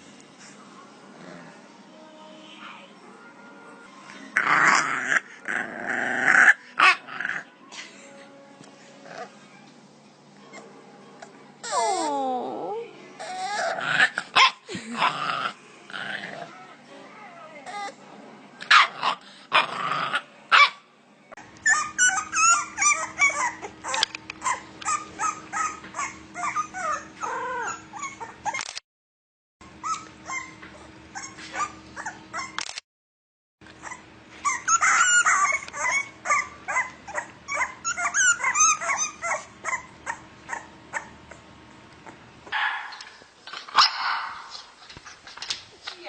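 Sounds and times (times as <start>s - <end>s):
puppies whimpering and yipping: 10.4s - 13.8s, 21.6s - 28.6s, 29.7s - 32.6s, 33.7s - 42.2s.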